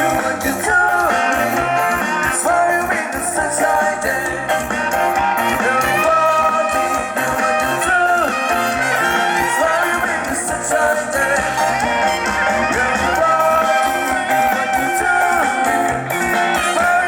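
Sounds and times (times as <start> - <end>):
band playing upbeat song: 0.0 - 17.0.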